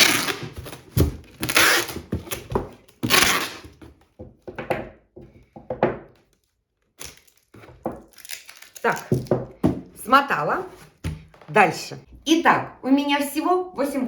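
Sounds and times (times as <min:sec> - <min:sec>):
packing tape pulled off roll: 0:00.0 - 0:03.7.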